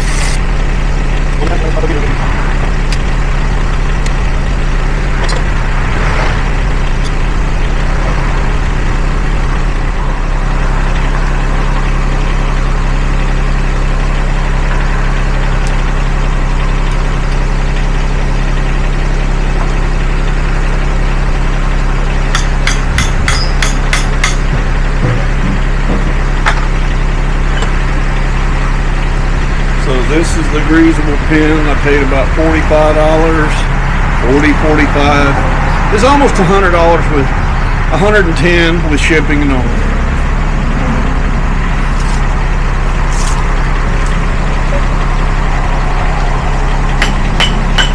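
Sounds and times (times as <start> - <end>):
engine idling: 0.0 - 47.9
sharp metallic taps: 22.3 - 26.7, 47.0 - 47.9.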